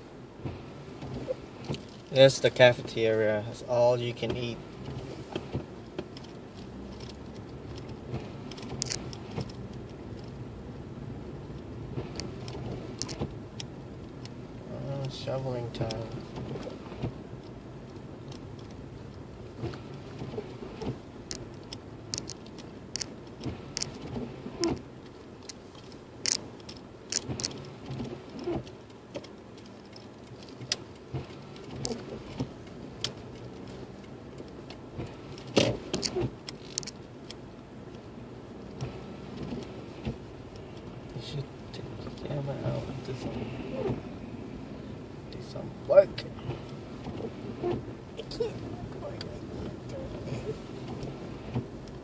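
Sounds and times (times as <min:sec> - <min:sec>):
car cabin hum while driving: 0:00.0 - 0:52.0
sharp clicks and small knocks: 0:04.1 - 0:10.4, 0:11.6 - 0:14.4, 0:15.0 - 0:38.1.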